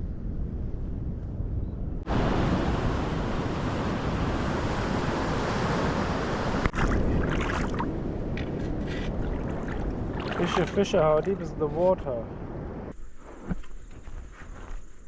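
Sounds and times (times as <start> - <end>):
surf breaking on shore: 2.1 - 7.9, 9.3 - 11.1.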